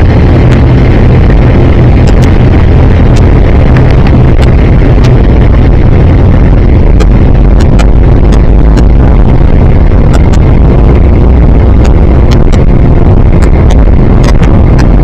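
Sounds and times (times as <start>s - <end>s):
airliner engines roaring: 0.0s - 15.0s.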